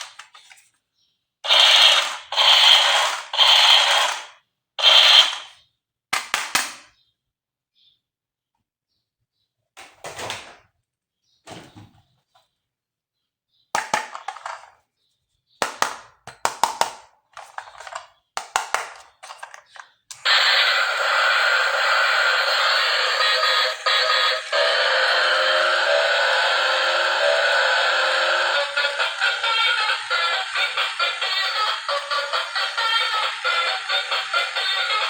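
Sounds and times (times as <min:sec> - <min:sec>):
plastic toy parts clattering: 0:13.8 - 0:14.8, 0:15.7 - 0:20.2
hissing electronic sound effect: 0:20.3 - 0:32.7.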